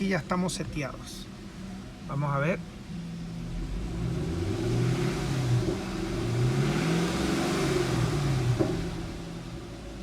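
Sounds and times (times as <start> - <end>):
car engine revving: 3.4 - 9.6.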